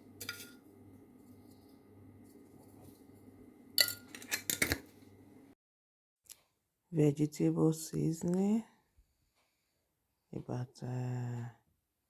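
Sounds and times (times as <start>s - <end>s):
utensils clinking against a pot: 0.2s - 0.6s, 3.8s - 4.9s.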